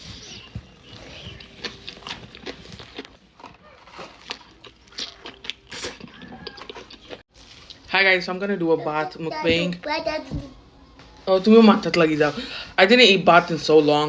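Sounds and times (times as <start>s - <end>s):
close chewing with lip smacks: 0.2s - 7.8s.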